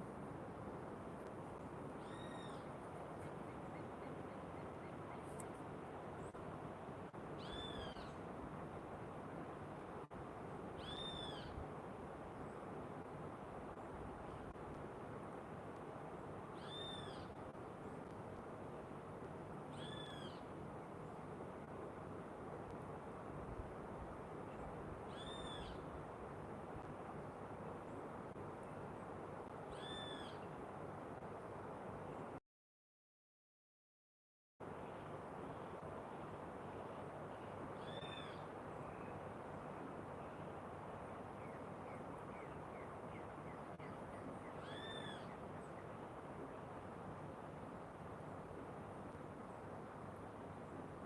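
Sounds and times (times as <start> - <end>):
bird calling: 2.0 - 2.7, 7.4 - 8.2, 10.8 - 11.6, 16.6 - 17.4, 19.7 - 20.4, 25.1 - 25.8, 29.7 - 30.4, 37.8 - 38.4, 44.4 - 45.4.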